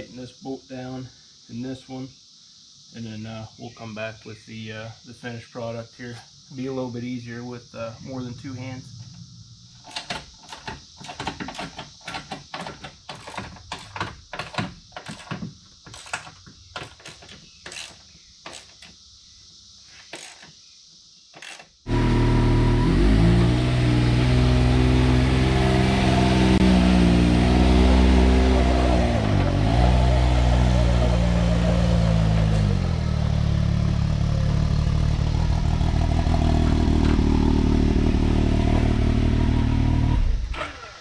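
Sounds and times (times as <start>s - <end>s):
sharp clicks and knocks: 9.8s - 19.0s, 20.0s - 20.5s, 21.4s - 21.8s
loud vehicle engine running: 21.9s - 40.5s.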